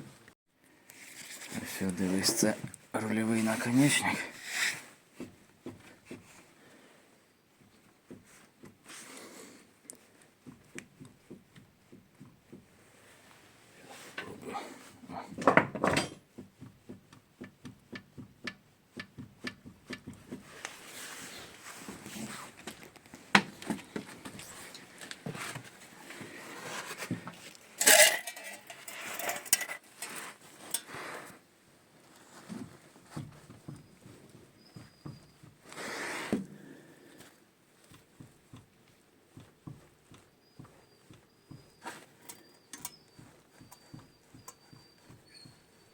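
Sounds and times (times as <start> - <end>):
hand tools knocking: 15.4 - 20.5
metal parts clanking: 27.8 - 30.1.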